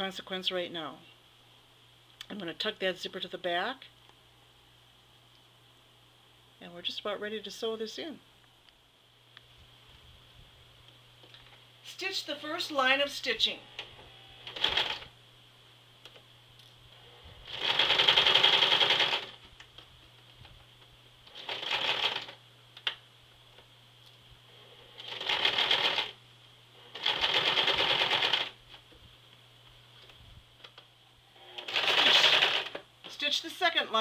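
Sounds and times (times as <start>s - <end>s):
sewing machine stitching: 13.8s - 15.1s, 17.4s - 19.4s, 21.3s - 22.4s, 25.0s - 26.2s, 26.9s - 28.6s, 31.4s - 32.8s.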